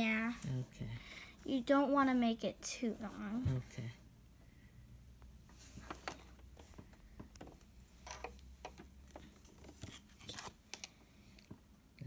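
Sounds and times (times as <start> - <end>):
small clicks and taps: 5.8 - 11.6.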